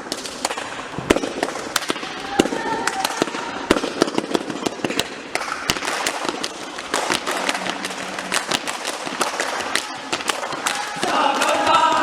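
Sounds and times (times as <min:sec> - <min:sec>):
hand claps and slaps: 0:02.8 - 0:12.0.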